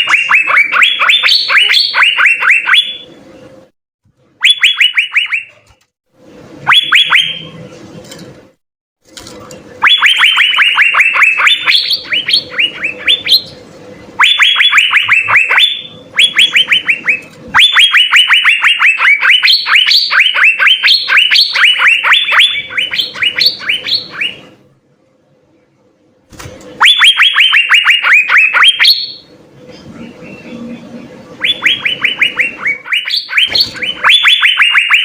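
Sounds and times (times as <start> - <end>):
bird singing whistled notes: 31.4 - 35.0.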